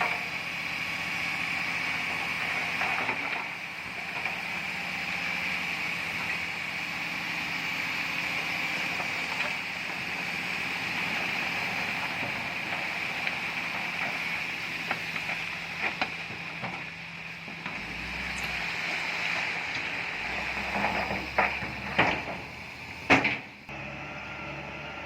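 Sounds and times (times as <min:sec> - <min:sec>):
bulldozer engine running: 0:00.0 - 0:25.0
knocks and clanks: 0:12.0 - 0:18.6, 0:19.3 - 0:23.6.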